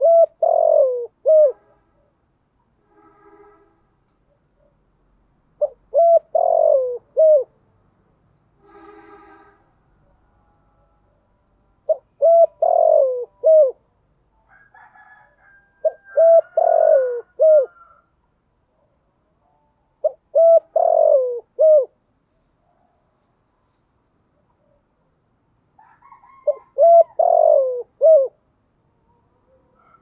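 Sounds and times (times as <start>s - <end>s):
dove cooing: 0.0s - 1.7s, 5.6s - 7.5s, 11.9s - 13.8s, 15.8s - 18.0s, 20.0s - 22.0s, 26.0s - 28.4s.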